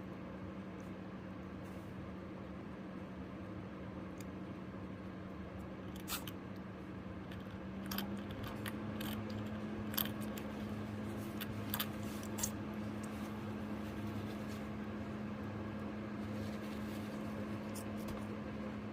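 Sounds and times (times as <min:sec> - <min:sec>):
steady low hum: 0:00.0 - 0:18.9
guinea pig sneezing: 0:05.9 - 0:06.4, 0:12.0 - 0:12.6.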